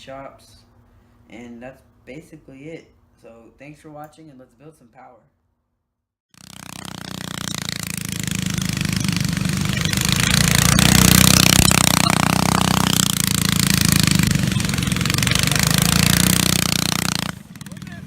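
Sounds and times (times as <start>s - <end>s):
small engine pulsing drone: 6.4s - 18.0s.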